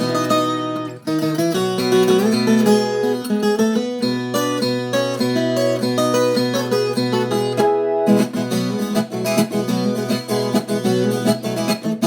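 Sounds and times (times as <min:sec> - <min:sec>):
guitar picking fast solo: 0:07.2 - 0:08.9.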